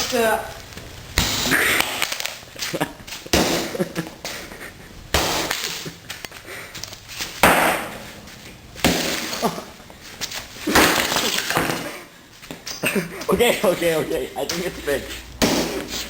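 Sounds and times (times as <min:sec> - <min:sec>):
device being smashed with crunching: 0:10.6 - 0:11.8.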